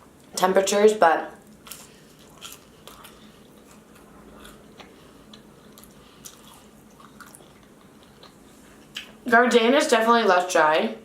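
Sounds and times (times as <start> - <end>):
person chewing crunchy food: 1.4 - 9.2.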